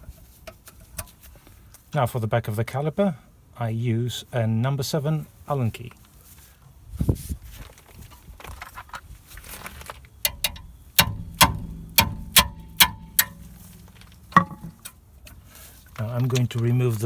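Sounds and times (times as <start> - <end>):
soft handling noises: 5.8 - 10.9
metal tools knocking on metal: 10.3 - 14.9.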